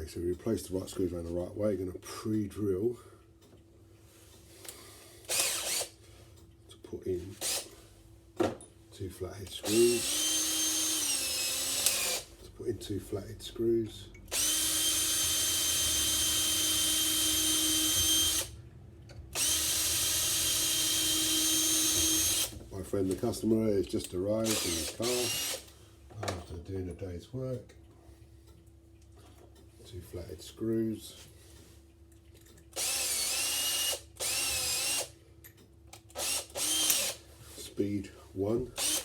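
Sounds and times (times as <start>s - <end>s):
power drill whining: 5.3s - 5.9s, 7.4s - 7.7s, 9.6s - 12.3s, 14.3s - 18.6s, 19.4s - 22.6s, 24.4s - 25.7s, 32.8s - 35.1s, 36.2s - 37.2s, 38.8s - 39.0s.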